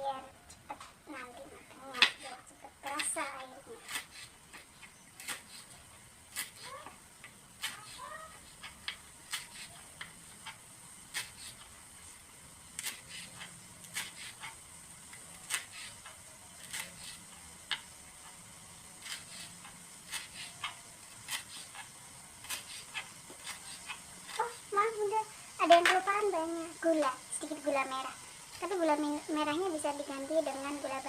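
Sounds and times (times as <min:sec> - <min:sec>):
knife slicing root: 0:03.8 - 0:06.9, 0:07.6 - 0:11.8, 0:12.8 - 0:18.4, 0:19.0 - 0:24.6.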